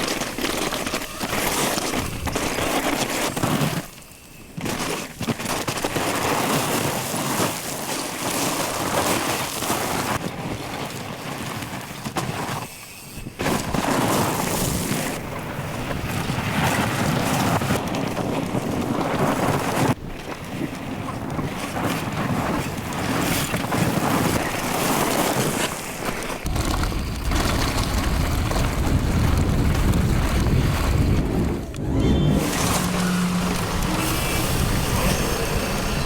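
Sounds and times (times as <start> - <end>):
mountain bike riding: 0.0 - 36.0
wind rushing over microphone: 26.4 - 36.0
deep rumble: 26.5 - 36.0.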